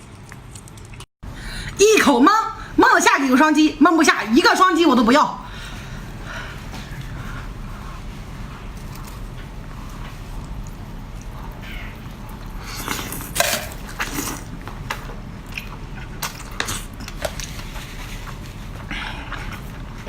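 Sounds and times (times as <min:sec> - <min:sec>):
close chewing and biting: 0:00.0 - 0:01.1.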